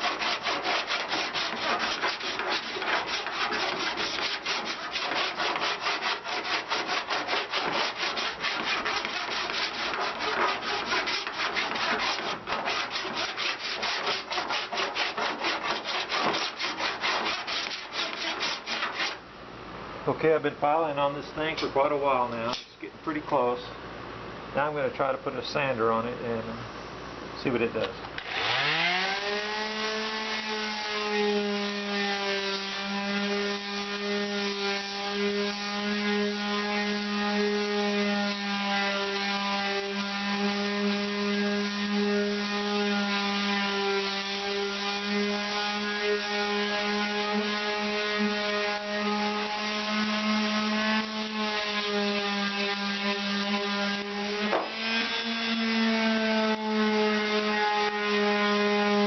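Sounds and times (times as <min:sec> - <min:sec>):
power sander running: 0:28.2 - 0:59.0.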